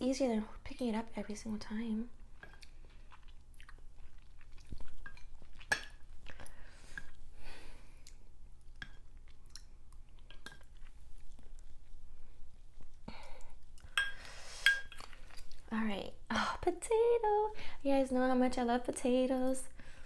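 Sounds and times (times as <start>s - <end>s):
close chewing and mouth sounds: 0.6s - 15.7s.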